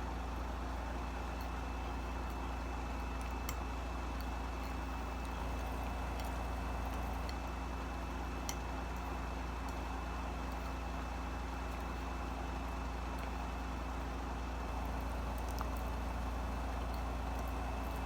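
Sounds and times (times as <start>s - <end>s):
steady low hum: 4.2s - 8.2s, 14.4s - 18.0s.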